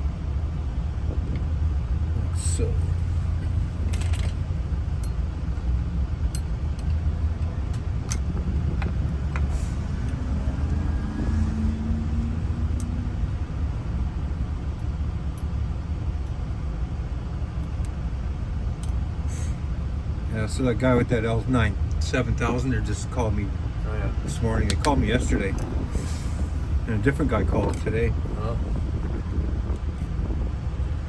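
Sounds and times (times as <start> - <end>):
low vehicle rumble: 0.0 - 31.0
faint clicks of lock parts: 3.8 - 4.4, 6.3 - 10.2, 18.8 - 19.1.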